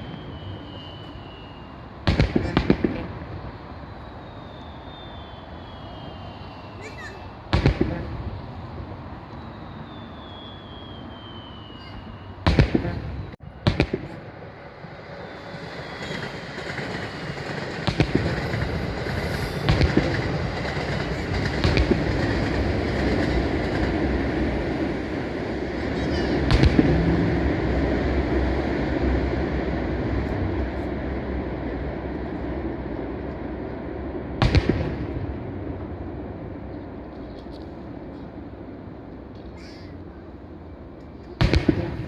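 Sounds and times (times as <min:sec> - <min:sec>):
continuous rumble: 0:00.0 - 0:05.4, 0:06.0 - 0:42.0
fireworks bangs: 0:00.0 - 0:09.0, 0:09.9 - 0:14.4, 0:15.2 - 0:27.9, 0:34.3 - 0:35.6, 0:41.4 - 0:42.0
fireworks crackling: 0:00.0 - 0:09.0, 0:09.6 - 0:28.6.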